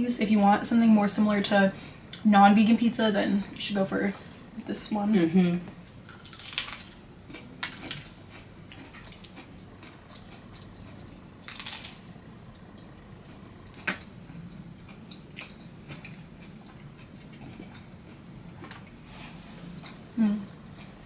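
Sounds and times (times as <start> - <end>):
crunchy crackle: 5.8 - 14.1
crisp pizza being chewed: 5.8 - 20.0.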